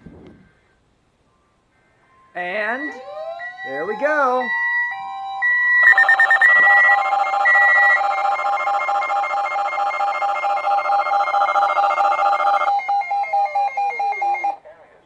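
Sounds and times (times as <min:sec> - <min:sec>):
steady multi-tone alert tone: 0:02.2 - 0:14.6
rapid electronic beeping: 0:05.4 - 0:14.6.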